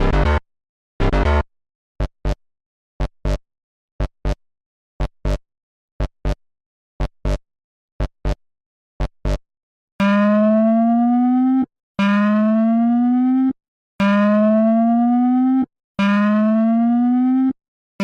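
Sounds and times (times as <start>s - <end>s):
rising alarm tone: 10.0s - 17.6s.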